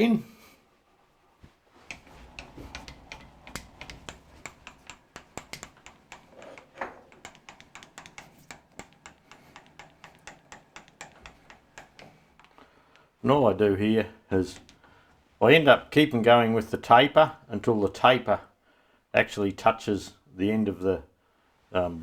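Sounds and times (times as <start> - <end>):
small parts and tools clicking: 1.9 - 13.1.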